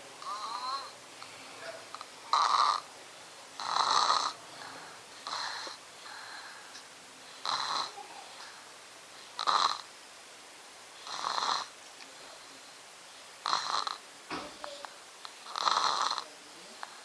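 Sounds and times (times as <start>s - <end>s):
quiet breathing: 0.0s - 9.5s, 10.8s - 17.0s
loud snoring: 0.2s - 1.0s, 1.9s - 2.9s, 3.6s - 4.4s, 5.2s - 5.8s, 7.4s - 8.0s, 9.4s - 9.9s, 11.0s - 11.7s, 13.4s - 14.0s, 15.4s - 16.3s.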